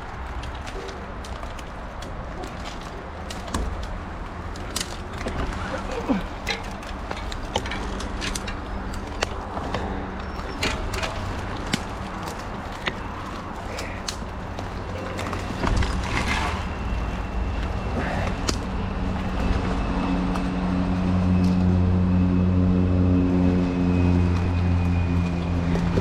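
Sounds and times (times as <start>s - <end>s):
clicks and rattles: 0.0s - 16.3s.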